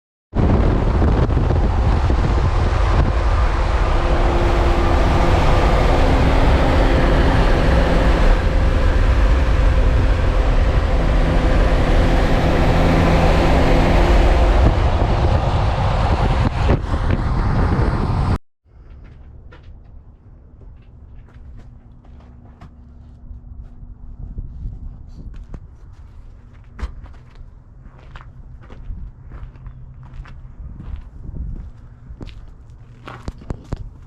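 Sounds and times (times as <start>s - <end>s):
diesel engine running: 0.4s - 18.4s.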